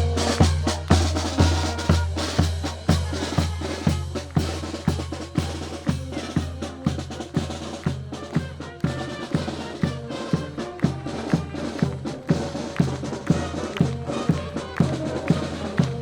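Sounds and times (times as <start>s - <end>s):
drum kit beat: 0.0s - 16.0s.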